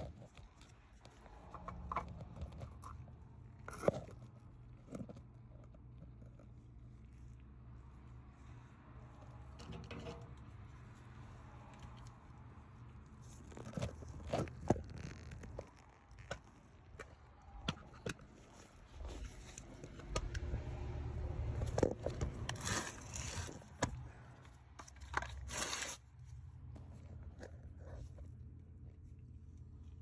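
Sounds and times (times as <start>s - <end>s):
hard parts clicking and knocking: 9.5s - 10.5s.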